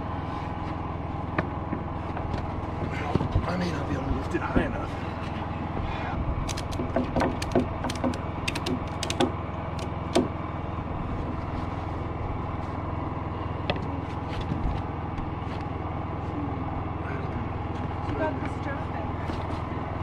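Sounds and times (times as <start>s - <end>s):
steady engine hum: 0.0s - 20.0s
sharp clicks and knocks: 6.4s - 10.3s.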